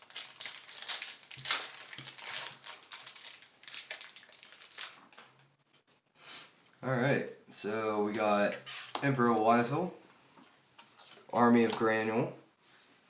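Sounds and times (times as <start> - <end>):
foil wrapper crinkling and tearing: 0.0 - 5.4.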